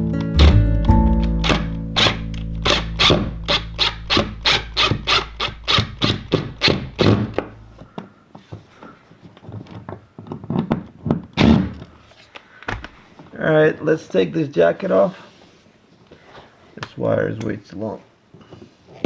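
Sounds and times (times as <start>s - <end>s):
strummed guitar music: 0.0s - 7.8s
tools and cable handling: 0.4s - 7.6s.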